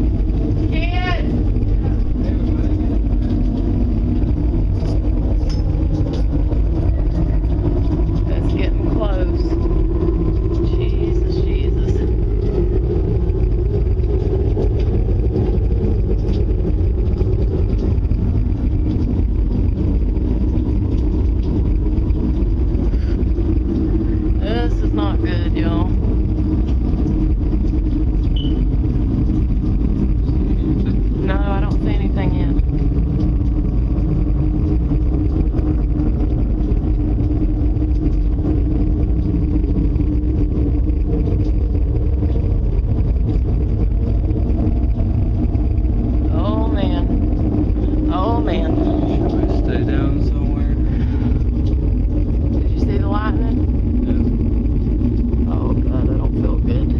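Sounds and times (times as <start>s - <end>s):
loud low rumble: 0.0s - 56.9s.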